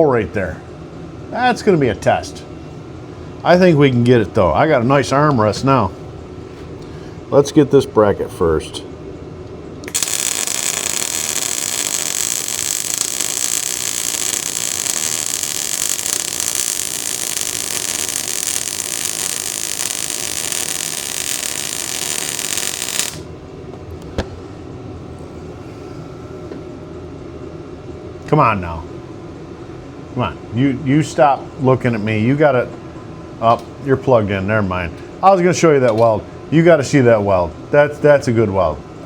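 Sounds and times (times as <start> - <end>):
welding arc hissing: 9.9 - 23.3.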